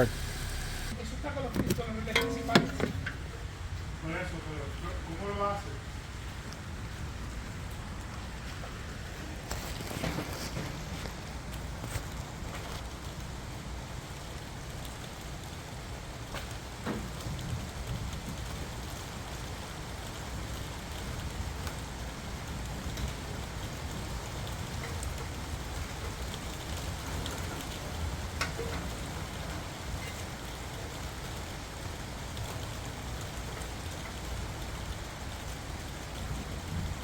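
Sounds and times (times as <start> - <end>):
background hiss: 0.0 - 5.8.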